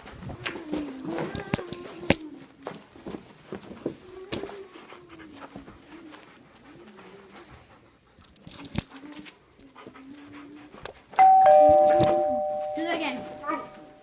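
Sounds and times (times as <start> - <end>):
dog panting: 3.3 - 11.4.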